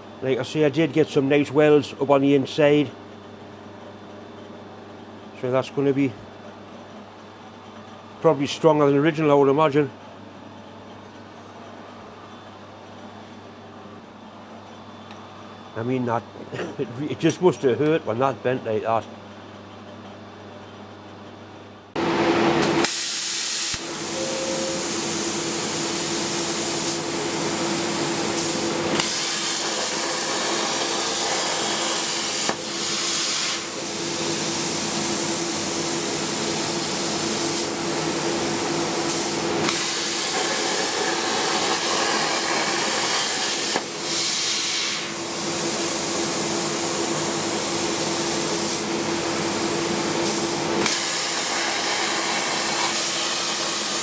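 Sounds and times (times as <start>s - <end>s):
plasma cutter hissing: 22.6s - 54.0s.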